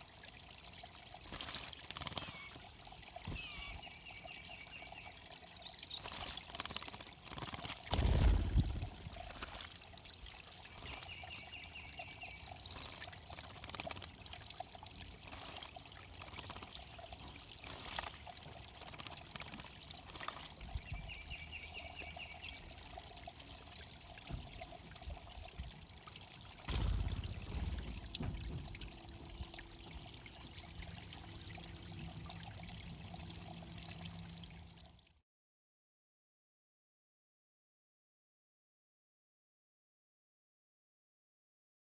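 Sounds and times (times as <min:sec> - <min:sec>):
water trickling: 0:00.0 - 0:35.2
bird trill: 0:02.0 - 0:02.7, 0:03.3 - 0:06.9, 0:30.6 - 0:31.8
high bird chirps: 0:02.1 - 0:02.6, 0:03.3 - 0:06.9, 0:30.6 - 0:31.8
low thump: 0:26.7 - 0:28.9.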